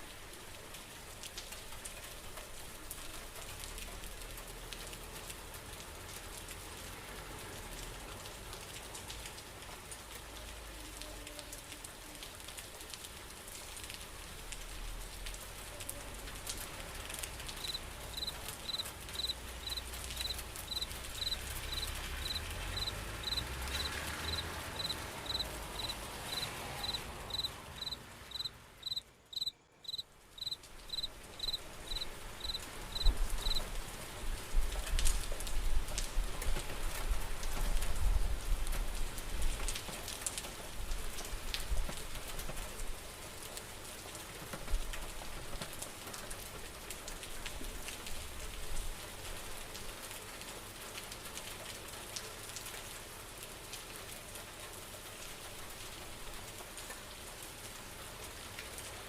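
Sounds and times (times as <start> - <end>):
steady rain falling: 0.0 - 59.0
cricket chirping: 17.6 - 33.6.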